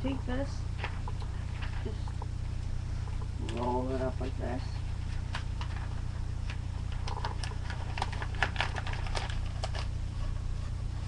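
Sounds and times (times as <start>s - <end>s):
low electrical hum: 0.0s - 11.0s
paper crinkling: 0.8s - 2.2s, 4.8s - 10.5s.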